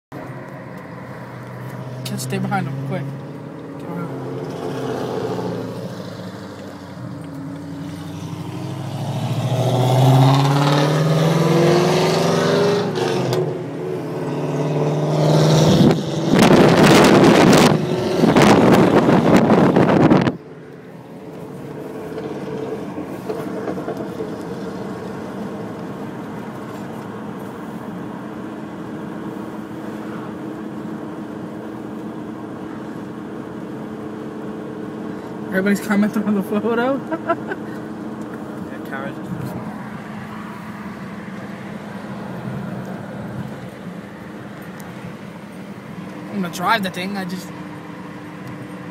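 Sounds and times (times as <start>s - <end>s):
car cruising drone: 0.1s - 48.9s
car engine accelerating hard: 0.9s - 48.9s.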